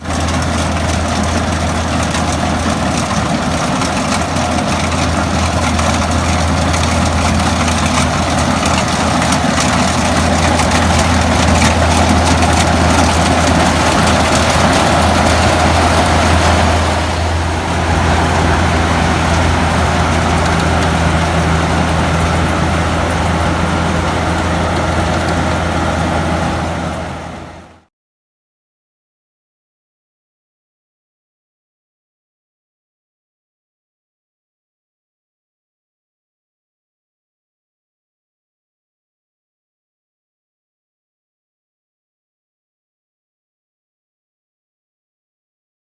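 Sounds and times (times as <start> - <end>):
combine harvester engine humming: 0.0 - 27.9.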